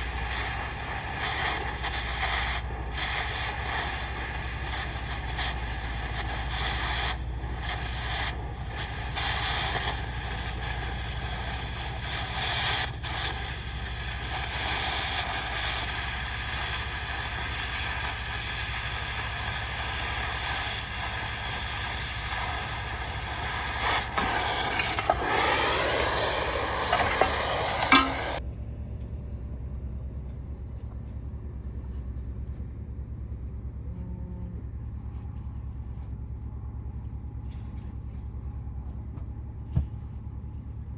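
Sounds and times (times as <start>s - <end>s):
electric arc crackling on steel: 0.0s - 28.4s
welder motor running: 0.0s - 28.4s.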